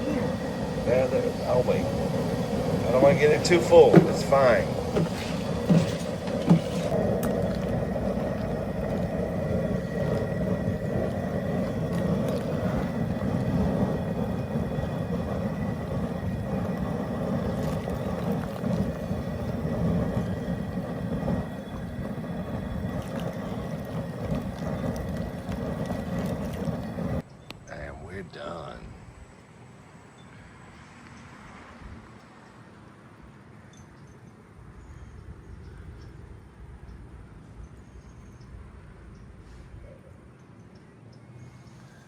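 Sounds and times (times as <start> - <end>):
water boiling: 0.0 - 27.2
propane burner roaring: 0.0 - 29.3.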